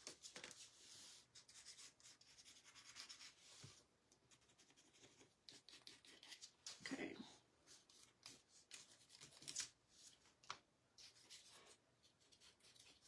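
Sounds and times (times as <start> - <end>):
paintbrush scratching on frame: 0.6 - 6.5.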